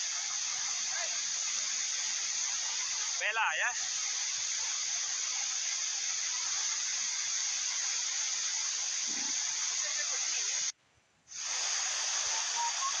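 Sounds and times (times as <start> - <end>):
waterfall rushing: 11.4 - 13.0.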